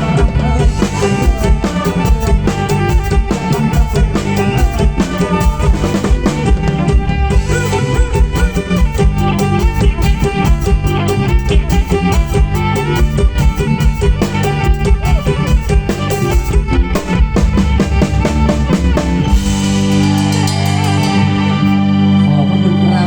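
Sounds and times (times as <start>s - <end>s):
drum kit beating: 0.0s - 22.4s
live band playing: 0.0s - 23.0s
held organ chord: 19.1s - 23.0s.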